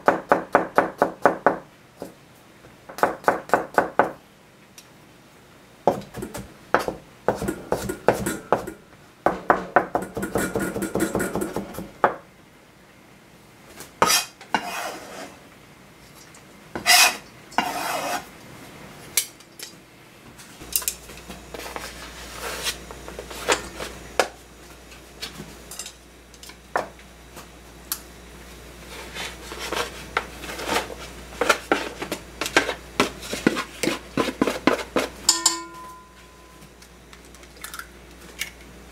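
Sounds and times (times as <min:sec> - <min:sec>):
low steady hum: 0:18.4 - 0:38.9
cookware and utensils clattering: 0:35.2 - 0:36.4.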